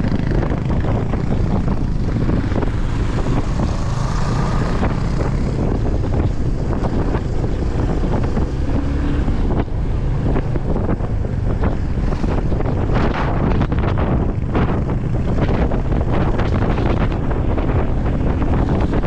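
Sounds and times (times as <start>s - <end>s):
strong wind buffeting microphone: 0.0s - 19.0s
vehicle rumble: 0.0s - 19.0s.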